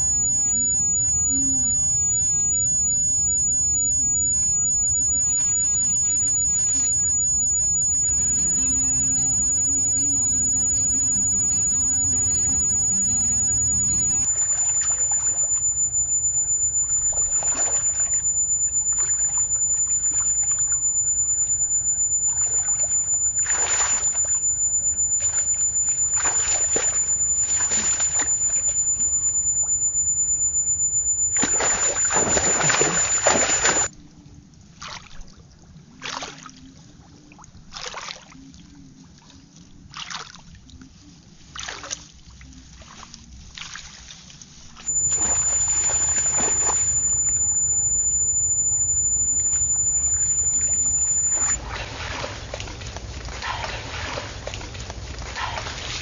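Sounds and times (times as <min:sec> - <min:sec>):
water splashing: 0:22.3 - 0:24.4, 0:31.4 - 0:33.8.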